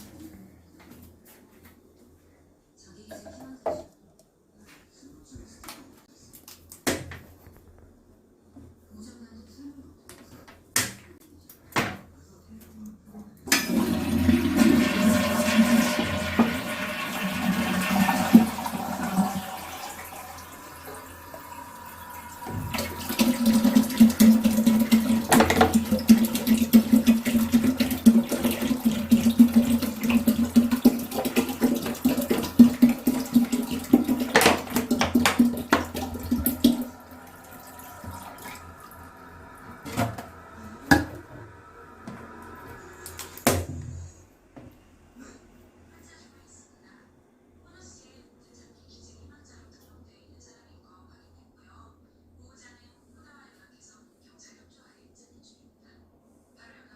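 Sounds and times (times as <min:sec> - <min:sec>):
water splashing in a toilet: 0:13.5 - 0:43.8
water trickling: 0:19.5 - 0:43.4.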